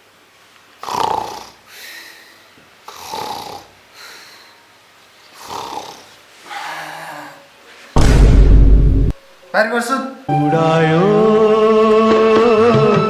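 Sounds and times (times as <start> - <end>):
person snoring: 0.8 - 2.2, 2.9 - 3.7, 5.4 - 7.5
soft breath out: 3.9 - 4.7.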